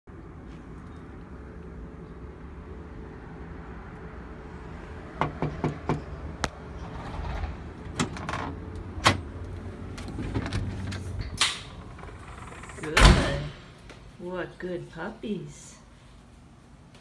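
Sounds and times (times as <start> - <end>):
knocks on a door: 5.2 - 6.0
steady low hum: 5.9 - 17.0.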